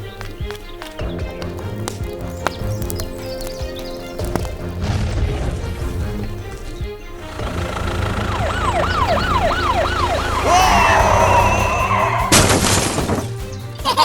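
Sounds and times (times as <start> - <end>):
background music: 0.0 - 14.0
police siren yelping: 7.2 - 12.4.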